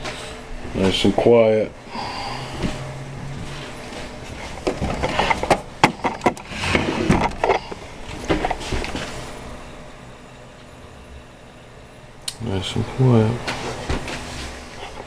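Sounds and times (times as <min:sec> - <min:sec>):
handling clicks and knocks: 0:04.6 - 0:06.5.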